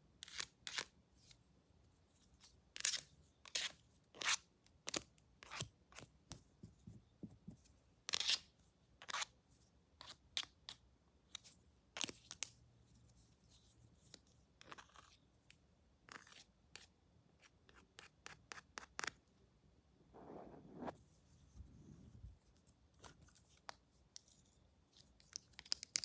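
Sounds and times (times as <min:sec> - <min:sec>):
soft rustle: 0:20.1 - 0:24.7.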